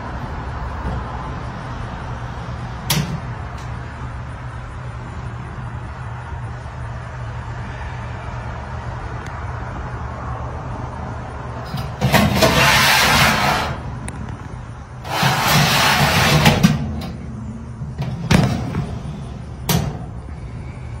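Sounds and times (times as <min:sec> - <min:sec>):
toaster oven scraping and sliding: 0:11.7 - 0:13.8, 0:15.0 - 0:17.2.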